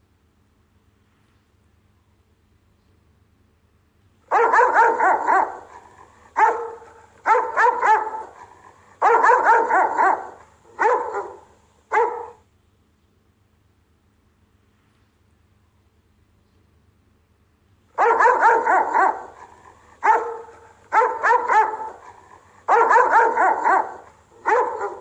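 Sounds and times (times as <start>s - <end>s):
dog barking: 4.3s - 12.4s, 18.0s - 25.0s.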